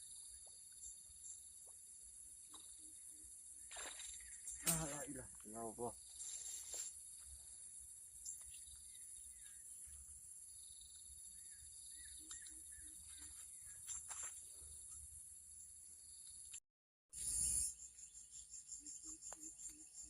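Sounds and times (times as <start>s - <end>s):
insects chorus: 0.0s - 16.6s, 17.2s - 20.0s
soft chirps and clicks: 2.4s - 5.6s, 8.2s - 10.1s, 12.0s - 15.0s, 18.9s - 20.0s.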